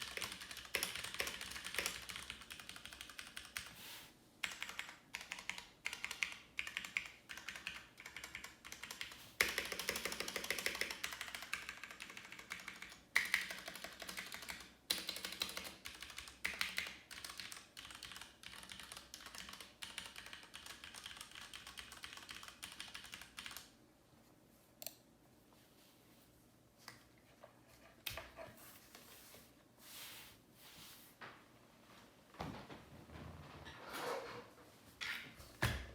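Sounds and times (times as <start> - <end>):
mechanical keyboard typing: 0.0 - 3.8, 4.4 - 23.7.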